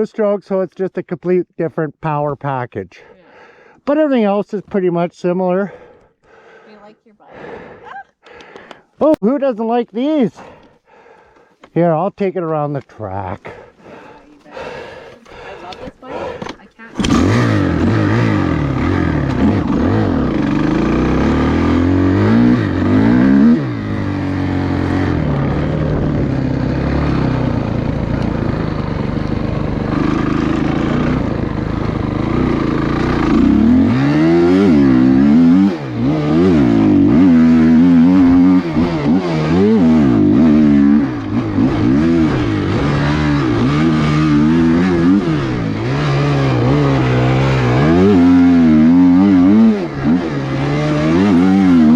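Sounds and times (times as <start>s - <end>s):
dirt bike engine revving: 13.4s - 51.9s.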